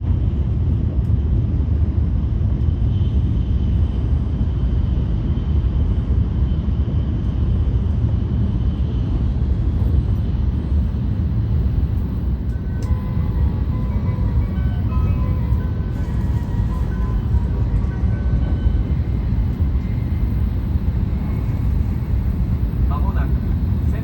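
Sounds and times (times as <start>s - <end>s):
train rumble inside cabin: 0.0s - 24.0s
faint high whine: 9.8s - 24.0s.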